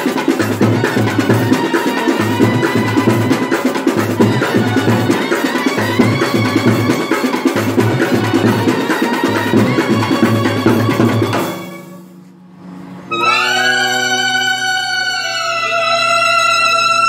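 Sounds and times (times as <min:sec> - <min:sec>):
pulsing low drum beat: 0:00.0 - 0:11.7
brass band with drums playing: 0:00.0 - 0:12.1.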